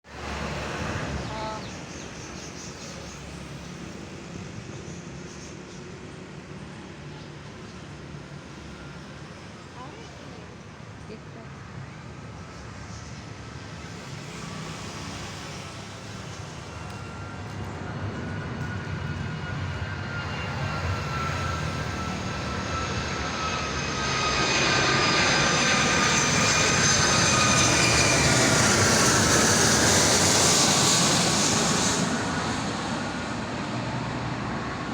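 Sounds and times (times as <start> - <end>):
jet engines whining: 11.6 - 34.9.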